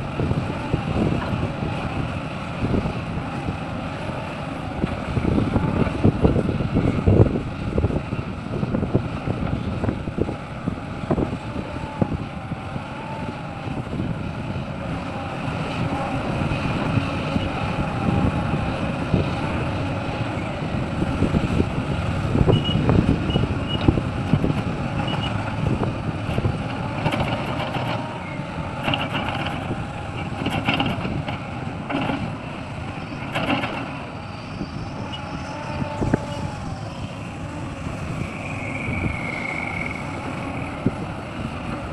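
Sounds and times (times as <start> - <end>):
excavator diesel engine running: 0.0 - 41.9
wavering hydraulic whine: 0.0 - 41.9
knocks and clatters: 30.3 - 32.3.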